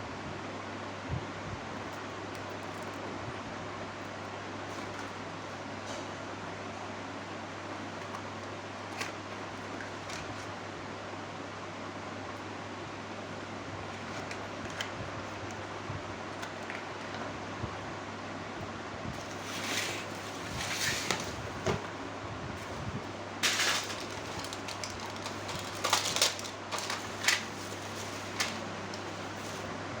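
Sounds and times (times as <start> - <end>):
fan-like hiss with low hum: 0.0 - 30.0
short rustles: 22.6 - 29.8.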